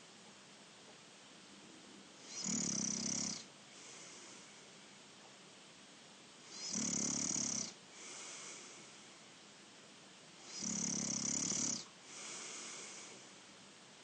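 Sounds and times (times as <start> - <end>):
person snoring: 2.2 - 4.5, 6.5 - 8.9, 10.4 - 13.2
soft breath: 3.7 - 4.9, 7.9 - 9.3, 11.7 - 13.6.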